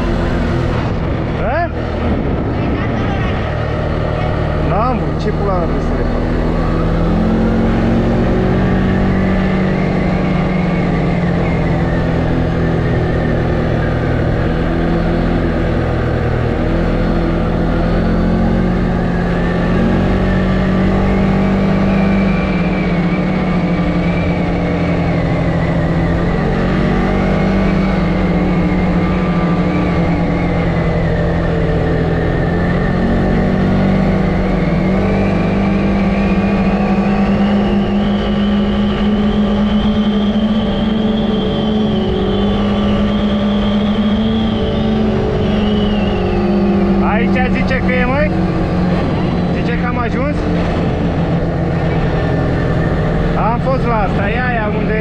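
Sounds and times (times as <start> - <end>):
atv engine running: 0.0 - 55.0.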